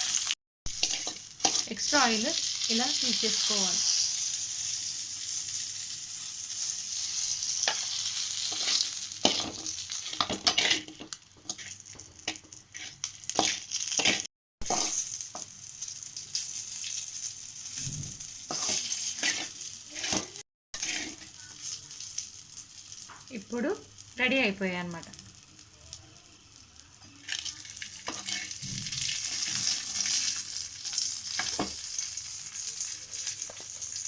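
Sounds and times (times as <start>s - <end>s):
chicken sizzling in frying oil: 0.0s - 34.0s
utensil scraping pan: 18.5s - 21.3s, 28.0s - 30.4s.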